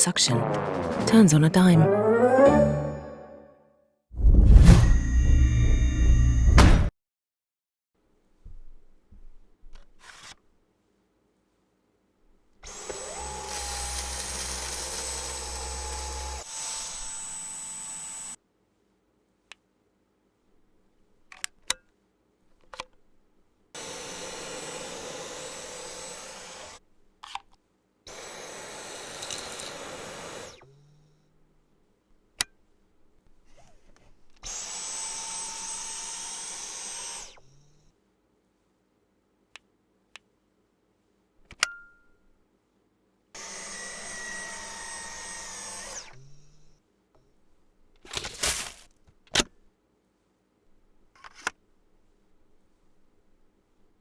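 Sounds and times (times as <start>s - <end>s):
vacuum cleaner motor whining: 12.6s - 18.4s, 23.8s - 26.8s, 28.1s - 30.7s, 43.4s - 46.0s.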